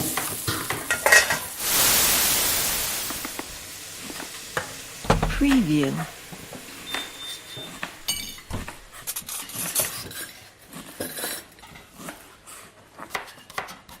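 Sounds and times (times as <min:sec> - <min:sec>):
pots and pans clattering: 0:00.0 - 0:02.0, 0:06.8 - 0:11.8.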